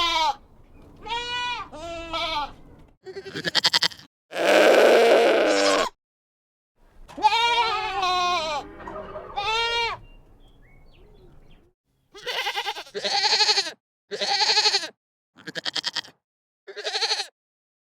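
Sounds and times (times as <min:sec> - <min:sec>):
goats bleating: 0:03.1 - 0:05.9, 0:07.1 - 0:08.6, 0:09.3 - 0:10.0, 0:12.2 - 0:16.1, 0:16.7 - 0:17.3.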